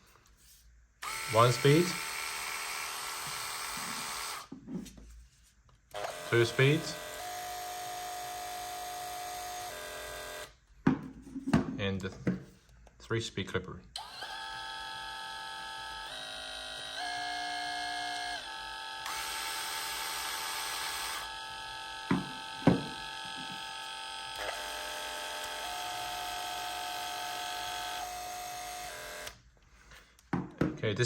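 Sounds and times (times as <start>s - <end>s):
electric hair clipper humming: 1.0s - 4.5s, 6.0s - 10.5s, 14.0s - 29.4s.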